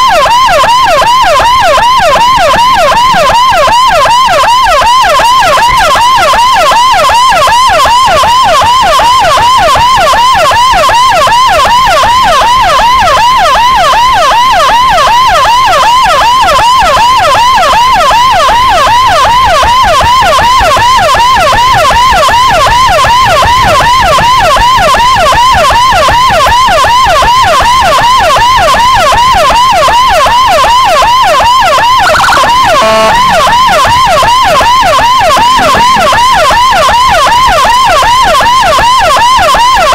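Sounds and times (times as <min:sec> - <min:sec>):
electronic siren yelp: 0:00.0 - 0:39.9
brief falling tone: 0:32.0 - 0:34.4.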